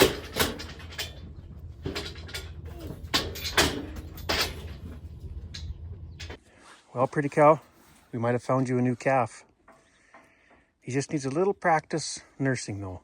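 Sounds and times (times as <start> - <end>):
low steady hum: 0.0 - 6.4
metal gates clanking: 0.0 - 6.4.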